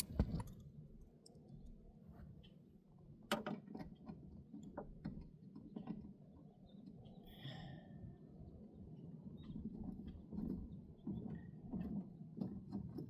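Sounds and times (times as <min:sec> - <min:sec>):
hand tools clicking and tapping: 0:00.0 - 0:00.5.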